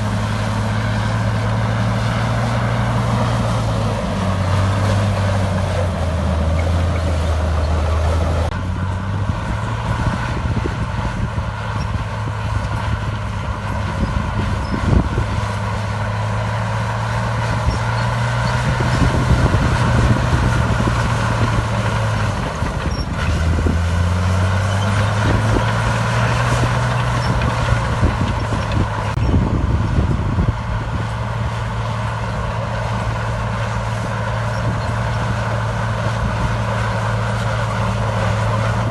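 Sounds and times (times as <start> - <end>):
heavy machinery diesel engine: 0.0 - 38.9.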